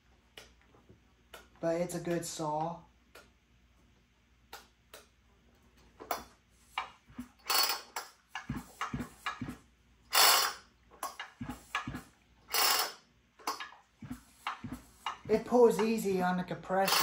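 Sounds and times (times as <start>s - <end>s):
starter rope rasping zip: 7.1s - 13.0s.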